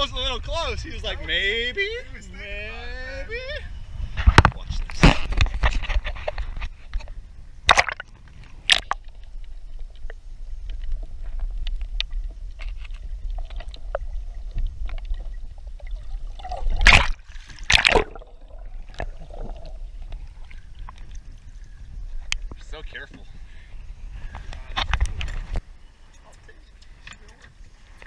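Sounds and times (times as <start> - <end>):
wind rumble on microphone: 0.0 - 17.6, 18.6 - 25.8
water sloshing and splashing: 5.1 - 10.1, 10.7 - 22.8.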